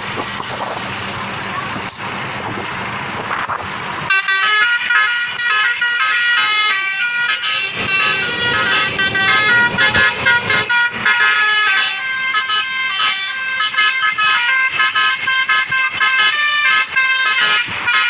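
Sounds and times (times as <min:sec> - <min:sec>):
multi-tone bus horn melody: 0:04.0 - 0:18.0.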